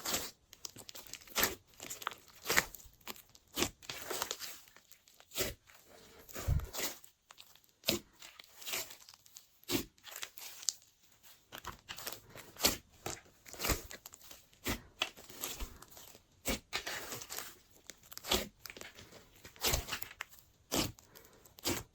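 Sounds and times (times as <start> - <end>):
slime crackling and popping: 0.0 - 21.9.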